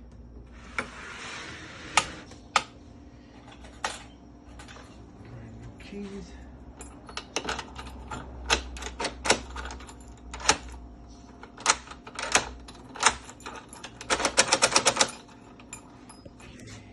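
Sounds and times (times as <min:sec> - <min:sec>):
lock clicking with key: 0:06.8 - 0:10.8, 0:11.4 - 0:15.8.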